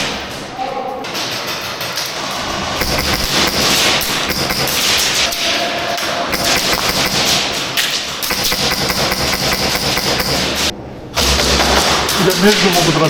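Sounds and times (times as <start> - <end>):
airsoft guns firing bursts: 2.8 - 5.3, 6.3 - 7.6, 8.2 - 10.7.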